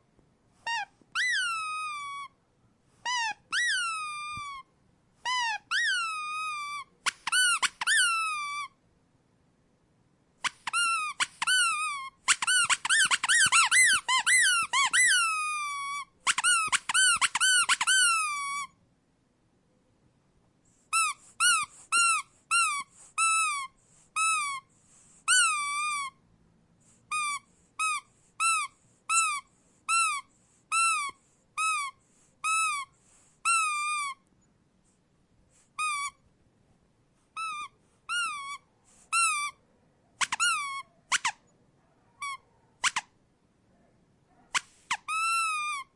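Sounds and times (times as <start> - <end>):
rubber squeak toy squeaking: 0.6 - 2.4, 3.0 - 8.8, 10.4 - 18.8, 20.8 - 26.2, 27.0 - 34.3, 35.6 - 36.2, 37.3 - 39.6, 40.2 - 41.5, 42.2 - 43.2, 44.5 - 45.9.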